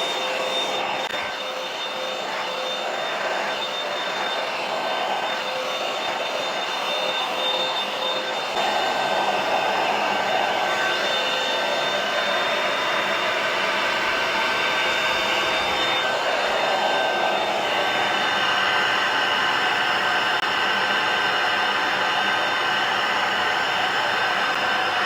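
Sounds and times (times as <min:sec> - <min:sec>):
hair dryer blowing: 0:00.0 - 0:25.0.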